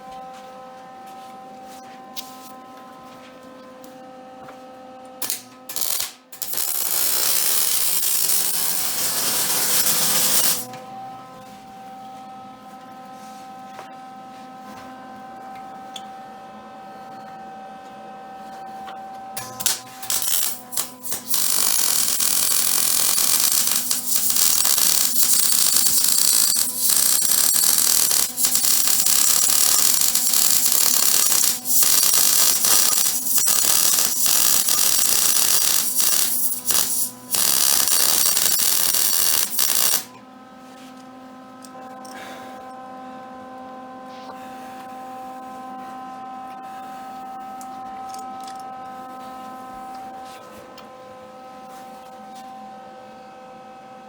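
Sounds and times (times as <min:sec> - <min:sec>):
welder arc crackling and hissing: 0:05.2 - 0:10.7, 0:19.6 - 0:40.1
steady electrical hum: 0:19.4 - 0:51.6.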